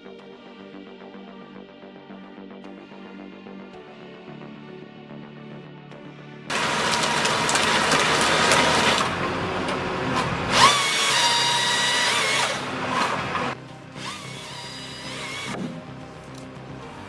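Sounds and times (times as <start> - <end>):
power tool running: 6.5 - 15.6
high steady whine: 6.5 - 17.0.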